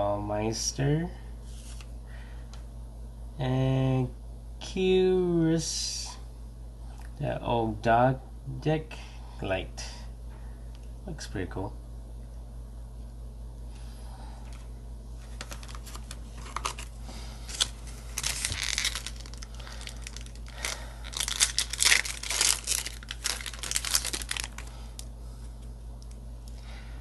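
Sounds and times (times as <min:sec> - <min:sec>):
foil wrapper tearing and crinkling: 0:15.3 - 0:25.1.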